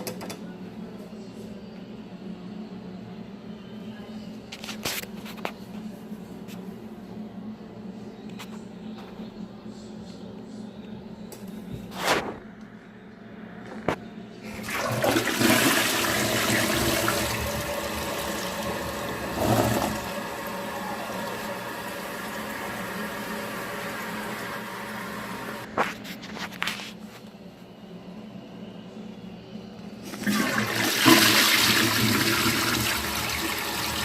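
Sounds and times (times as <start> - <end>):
toilet flushing: 14.5 - 25.7, 30.0 - 34.0.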